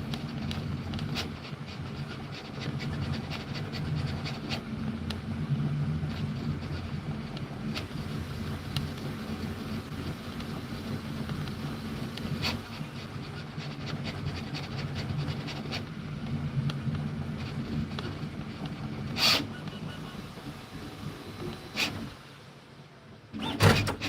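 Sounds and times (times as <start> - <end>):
three d printer fans and motors humming: 0.0 - 24.0.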